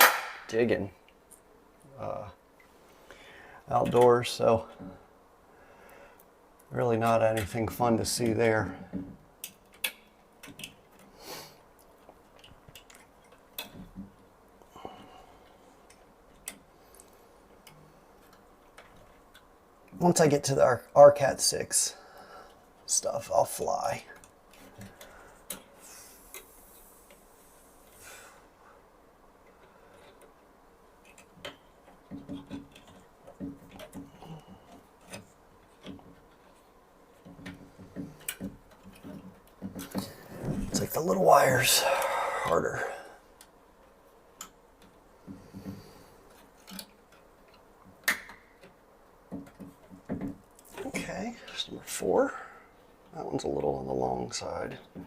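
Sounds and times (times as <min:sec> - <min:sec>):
small clicks and rustles: 0:05.9 - 0:20.4, 0:22.2 - 0:41.0, 0:42.0 - 0:55.0
hands handling small wires: 0:06.2 - 0:14.7, 0:15.4 - 0:20.4, 0:22.5 - 0:41.8, 0:42.4 - 0:53.4
sharp ticks of cable and tools: 0:11.8 - 0:14.1, 0:29.4 - 0:40.2, 0:42.0 - 0:51.7.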